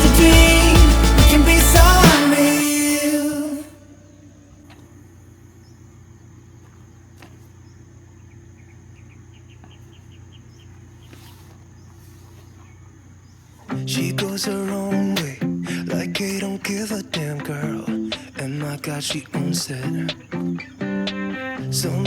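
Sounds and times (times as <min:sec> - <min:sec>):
pop song: 0:00.0 - 0:04.1, 0:13.7 - 0:22.0
rapid chirps: 0:00.0 - 0:04.7, 0:05.5 - 0:22.0
insect drone: 0:00.0 - 0:18.6.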